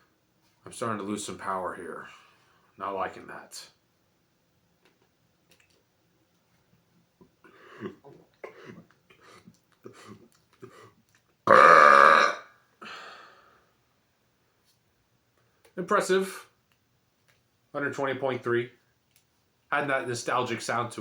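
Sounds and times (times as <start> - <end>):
man burping loudly: 11.5 - 12.5.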